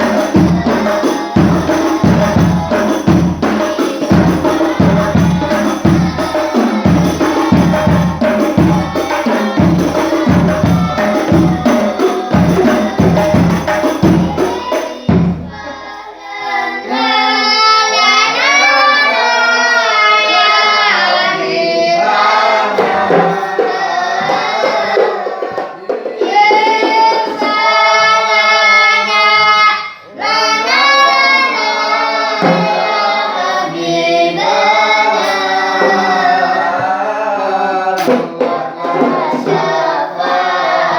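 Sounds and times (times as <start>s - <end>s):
frame drums beating: 0.0s - 15.7s, 21.0s - 27.8s, 32.4s - 33.4s, 34.3s - 37.0s, 37.9s - 40.9s
group singing devotional song: 0.0s - 40.9s.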